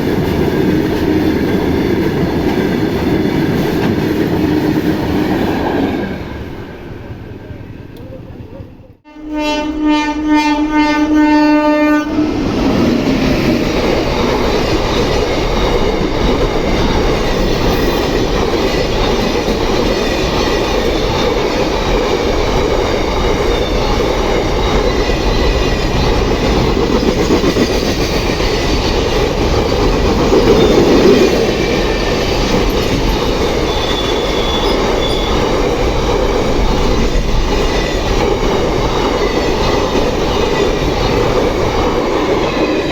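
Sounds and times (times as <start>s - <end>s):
train wheels on rails: 0.0s - 9.0s, 12.1s - 42.9s
locomotive horn blast: 9.0s - 12.4s.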